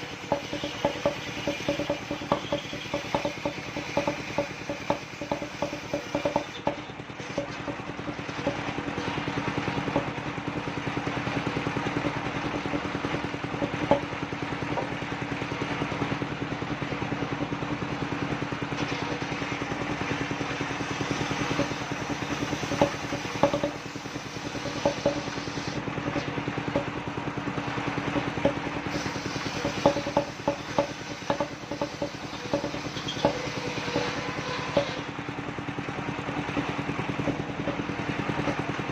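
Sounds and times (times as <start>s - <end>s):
sawmill engine running: 0.0s - 38.9s
sharp knocks and clatter: 0.0s - 38.9s.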